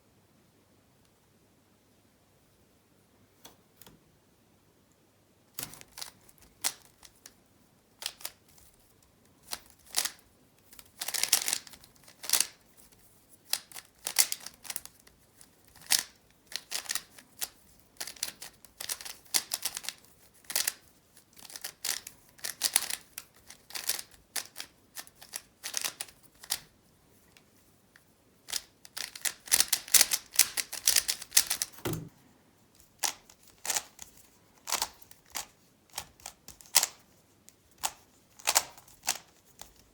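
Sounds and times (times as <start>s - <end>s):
plastic puzzle cube clacking: 8.0s - 8.6s, 9.4s - 12.6s, 13.5s - 20.8s, 21.4s - 26.6s, 28.5s - 32.1s, 33.0s - 37.0s, 37.8s - 39.9s.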